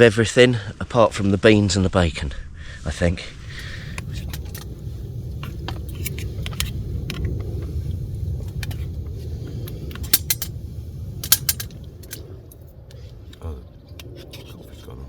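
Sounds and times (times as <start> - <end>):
steady low rumble: 3.2 - 15.0
metal cutlery clinking on plate: 10.0 - 10.5, 11.2 - 12.2.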